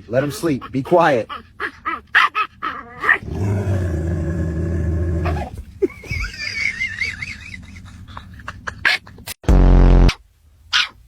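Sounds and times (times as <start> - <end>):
dog growling: 2.6 - 5.6.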